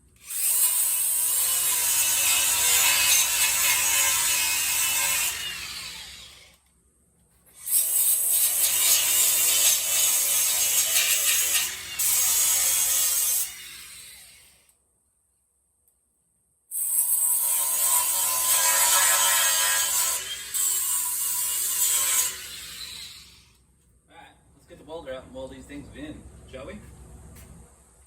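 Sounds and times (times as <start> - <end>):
power grinder grinding metal: 0.2 - 6.5, 7.7 - 14.4, 16.9 - 23.4.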